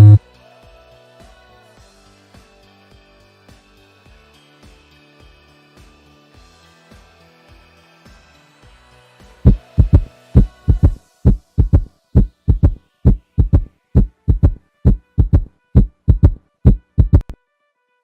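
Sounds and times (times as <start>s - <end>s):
heartbeat: 0.0s - 0.2s, 9.5s - 17.4s.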